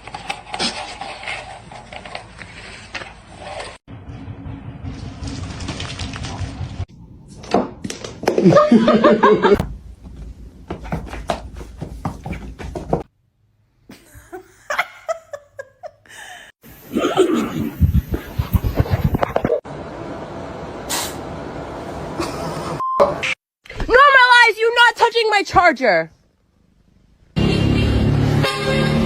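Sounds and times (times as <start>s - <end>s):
people laughing: 8.4s - 9.6s.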